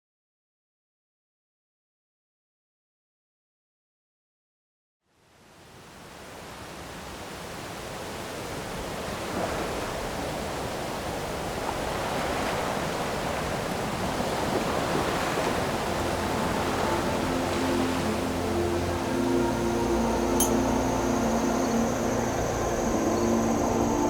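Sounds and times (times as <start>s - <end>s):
waves washing on shore: 6.0s - 19.7s.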